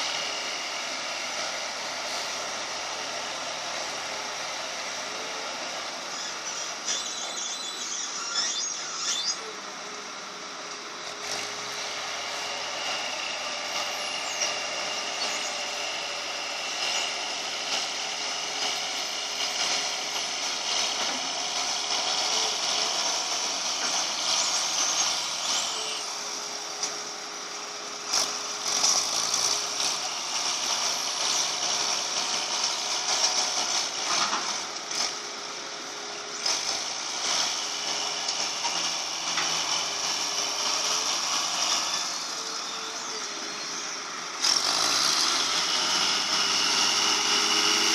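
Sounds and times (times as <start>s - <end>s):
diesel engine under load: 0.0s - 47.9s
hydraulic whine: 0.0s - 47.9s
high squeals from excavator boom: 6.1s - 9.5s.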